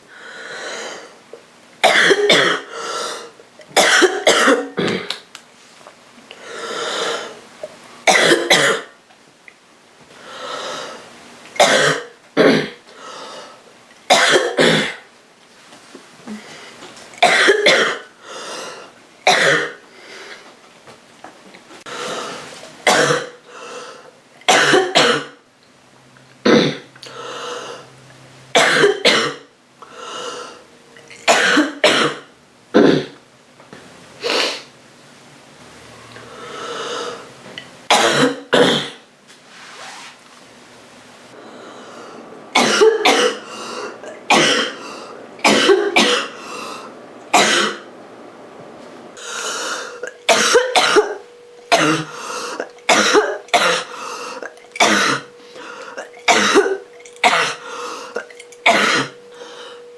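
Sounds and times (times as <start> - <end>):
girl breathing: 0.1 - 1.2, 6.4 - 7.4, 23.4 - 24.1, 27.0 - 27.9, 29.8 - 30.7, 36.1 - 37.3
girl coughing: 1.8 - 2.7, 3.8 - 5.2, 8.1 - 8.9, 11.6 - 12.8, 14.1 - 15.0, 17.2 - 18.1, 19.3 - 19.8, 22.8 - 23.4, 24.5 - 25.4, 26.5 - 26.9, 28.6 - 29.5, 31.1 - 33.2, 37.9 - 39.0, 42.6 - 43.4, 44.0 - 44.8, 45.4 - 46.4, 47.4 - 47.8, 50.0 - 53.9, 54.8 - 55.3, 56.0 - 57.6, 58.6 - 59.2.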